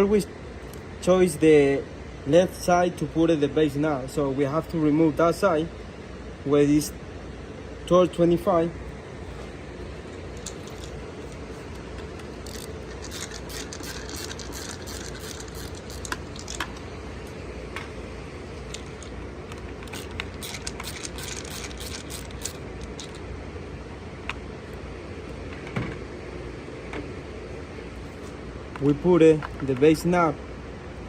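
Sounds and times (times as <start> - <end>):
steady low hum: 0.0 - 31.0
screwdriver and parts clicking: 12.0 - 16.8, 18.7 - 23.2.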